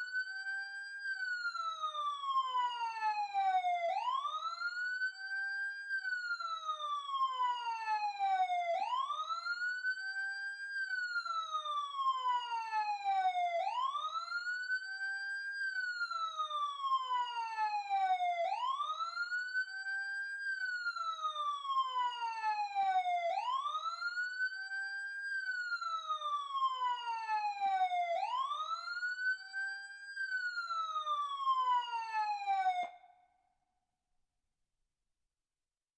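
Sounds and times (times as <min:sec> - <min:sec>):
emergency siren wailing: 0:00.0 - 0:33.1.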